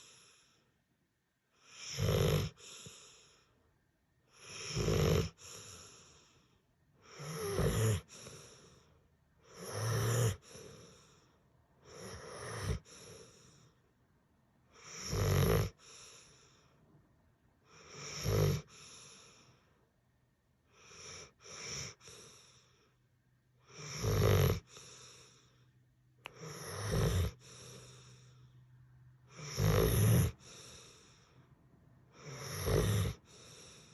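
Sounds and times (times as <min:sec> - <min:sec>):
person snoring: 0:01.6 - 0:03.5, 0:04.3 - 0:08.9, 0:09.5 - 0:13.8, 0:14.8 - 0:16.5, 0:17.8 - 0:19.5, 0:20.8 - 0:22.8, 0:23.7 - 0:25.6, 0:26.3 - 0:28.4, 0:29.3 - 0:31.4, 0:32.2 - 0:33.9.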